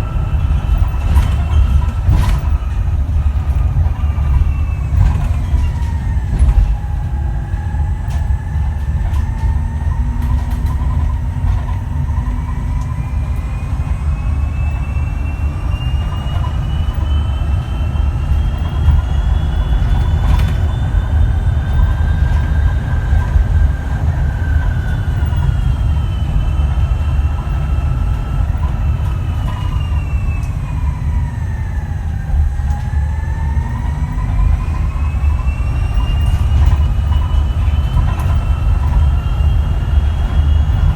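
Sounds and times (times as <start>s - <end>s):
electric bus drive whine: 0.0s - 40.9s
low rumble of moving bus: 0.0s - 40.9s.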